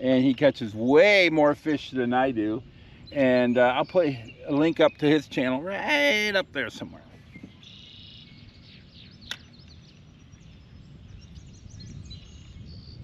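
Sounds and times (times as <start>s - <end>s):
low outdoor rumble: 0.0s - 13.0s
small birds chirping: 0.0s - 13.0s
sharp click: 9.3s - 9.5s.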